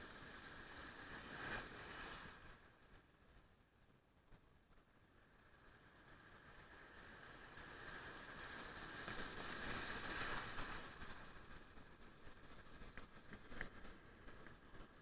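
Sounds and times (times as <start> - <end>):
wave washing on shore: 0.0 - 2.7, 6.1 - 15.0.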